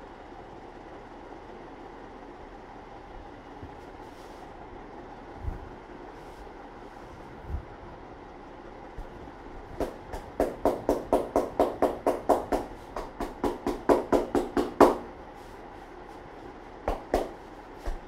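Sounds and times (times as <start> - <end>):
hands slapping a head: 9.8 - 15.0, 16.8 - 18.0.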